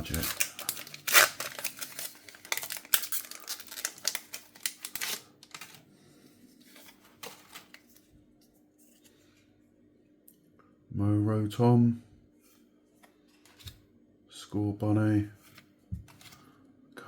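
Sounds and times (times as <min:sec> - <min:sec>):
foil wrapper crackling: 0:00.0 - 0:05.8.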